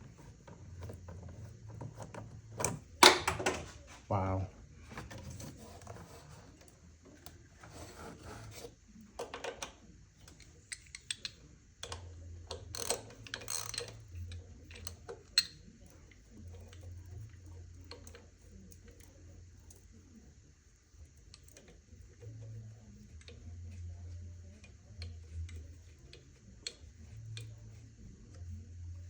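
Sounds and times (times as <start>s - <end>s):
tools and parts clicking and rattling: 10.3s - 15.7s.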